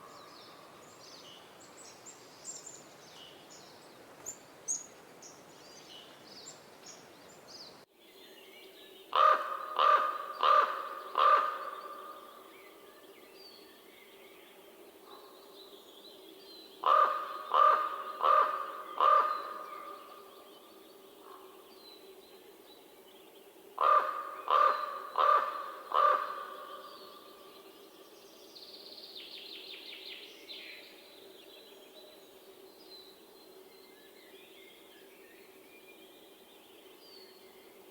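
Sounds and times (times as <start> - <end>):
raven croaking: 9.2 - 12.2, 16.8 - 20.2, 23.8 - 26.9.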